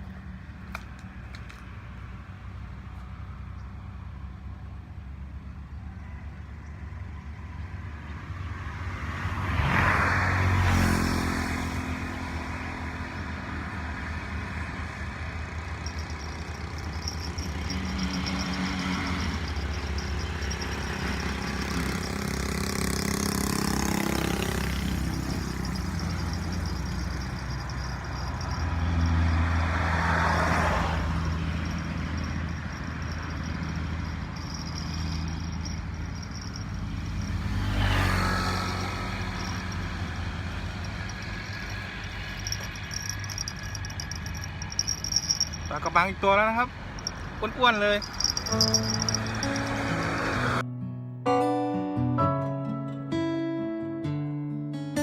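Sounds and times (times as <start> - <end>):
vehicles passing by: 0.0 - 50.7
vehicle engines running: 10.5 - 50.6.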